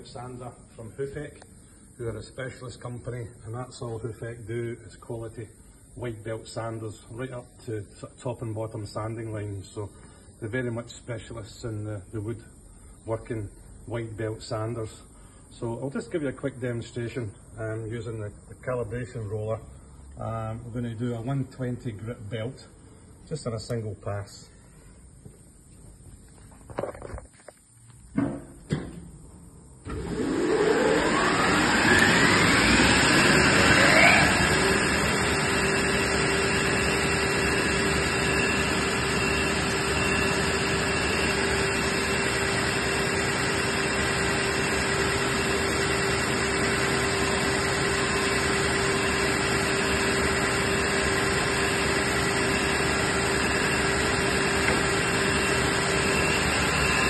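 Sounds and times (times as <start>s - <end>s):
sander motor spinning up and humming: 29.9s - 57.0s.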